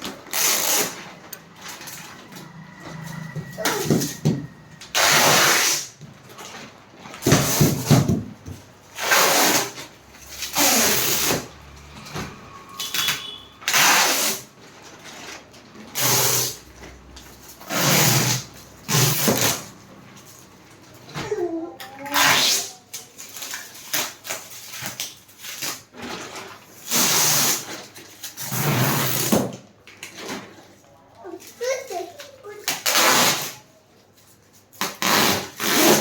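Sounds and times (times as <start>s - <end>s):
packing material tearing: 0.0s - 2.0s, 9.0s - 11.5s, 13.7s - 16.6s, 22.0s - 29.4s, 32.6s - 33.8s, 34.7s - 36.0s.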